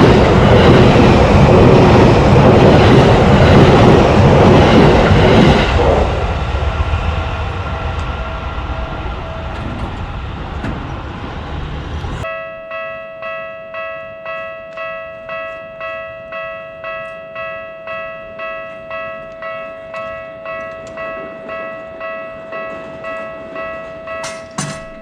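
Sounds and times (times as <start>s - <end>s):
level crossing bell strikes: 12.2s - 25.0s.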